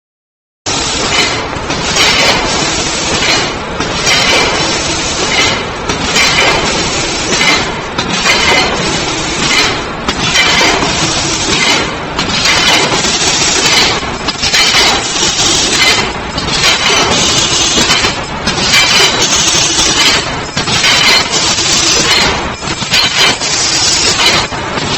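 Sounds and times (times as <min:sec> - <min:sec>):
sewing machine clatter: 0:07.4 - 0:24.9.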